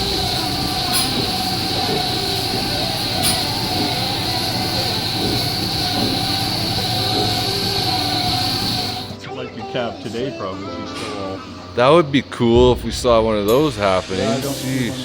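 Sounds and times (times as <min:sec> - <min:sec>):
milking machinery drone: 0:00.0 - 0:09.2
high whine: 0:12.5 - 0:15.0.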